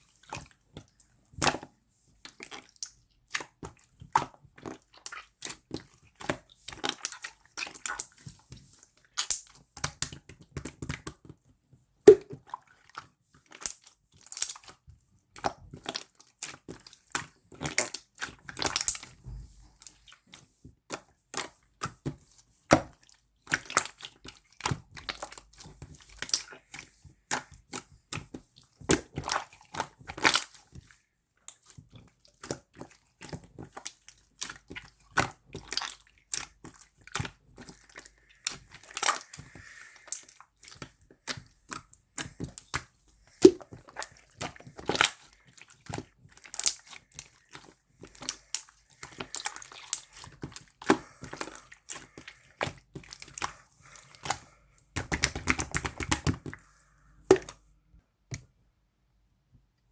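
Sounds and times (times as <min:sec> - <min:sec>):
slime squished by hand: 0:32.4 - 0:57.7.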